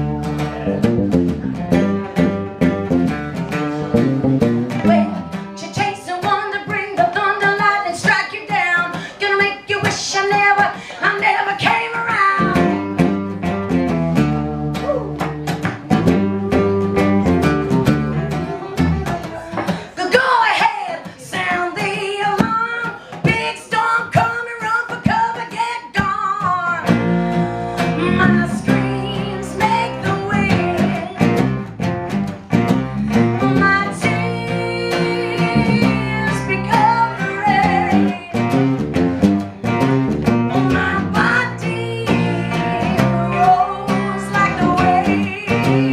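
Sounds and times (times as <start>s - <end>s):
bass line: 0.0s - 5.7s, 12.2s - 19.6s, 26.8s - 45.9s
acoustic guitar: 0.0s - 45.9s.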